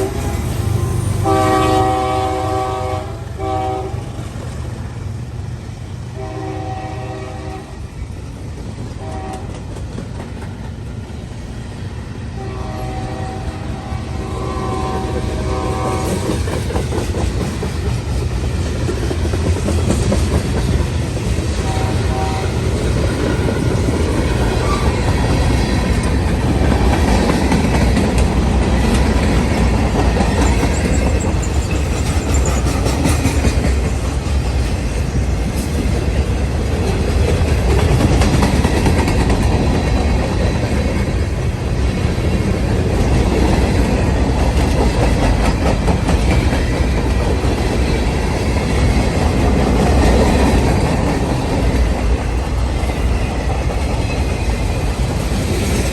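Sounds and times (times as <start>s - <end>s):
train horn: 0.0s - 4.2s, 6.1s - 7.9s, 9.0s - 9.6s, 12.3s - 16.4s, 21.6s - 22.8s
freight train rumbling past: 0.0s - 55.9s
wheels clacking over rail joints: 15.0s - 41.3s, 41.9s - 55.9s.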